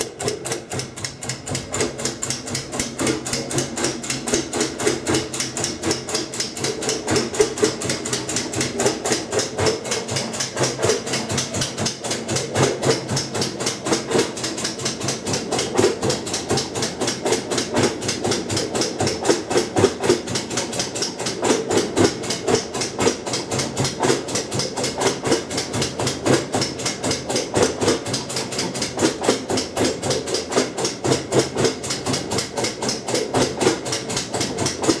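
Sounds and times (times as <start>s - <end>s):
washing machine clicking: 0.0s - 12.4s
washing machine motor hum: 0.0s - 35.0s.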